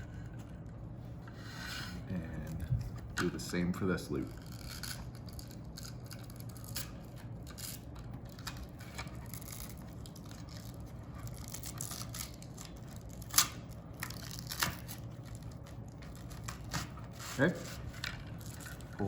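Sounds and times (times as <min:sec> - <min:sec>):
fabric strap scraping and rubbing: 0:14.1 - 0:19.0.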